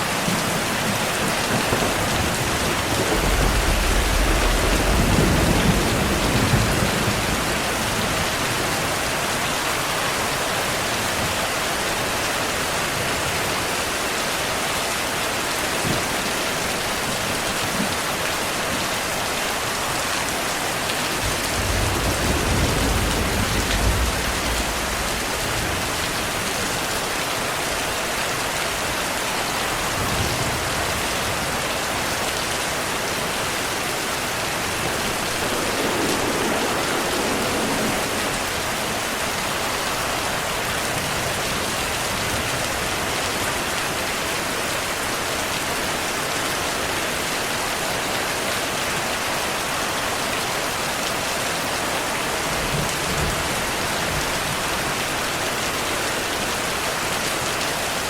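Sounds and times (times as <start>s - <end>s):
steady rain falling: 0.0s - 58.0s
distant thunder rumble: 0.2s - 9.2s, 21.1s - 26.7s, 33.3s - 42.6s.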